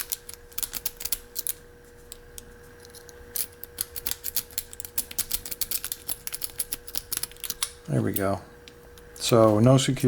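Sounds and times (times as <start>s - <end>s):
lock pins clicking rapidly: 0.0s - 1.6s, 3.3s - 8.3s
faint steady hum: 0.0s - 10.0s.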